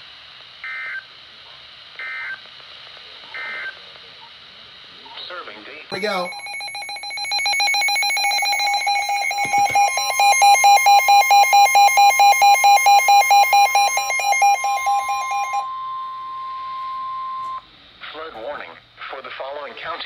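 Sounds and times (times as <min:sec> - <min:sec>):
rapid pulsing electronic alarm: 0:05.9 - 0:17.6
steady warning tone: 0:05.9 - 0:17.7.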